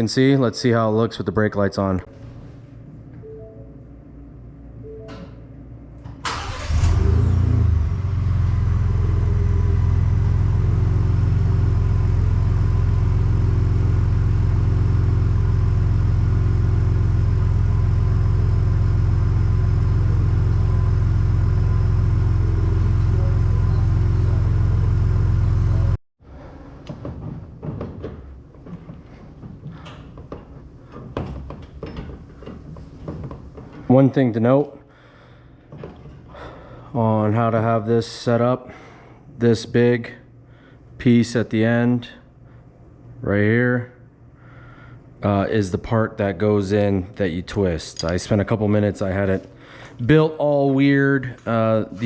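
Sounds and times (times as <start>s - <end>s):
car engine starting and idling: 6.1s - 26.0s.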